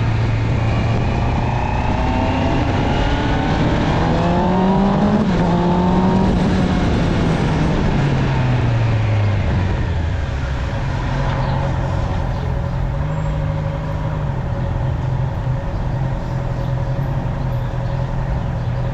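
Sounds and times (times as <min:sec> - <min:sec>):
motorcycle engine running: 0:00.0 - 0:18.9.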